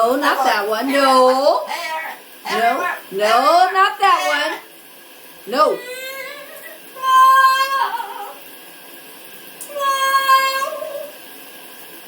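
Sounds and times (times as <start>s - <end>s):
parrot singing long notes: 5.9s - 8.4s.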